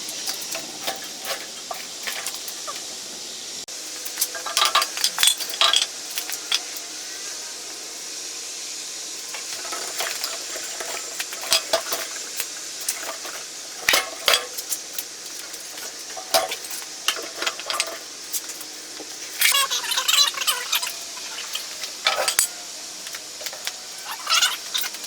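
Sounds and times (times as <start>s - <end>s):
steady high hiss: 0.0s - 25.0s.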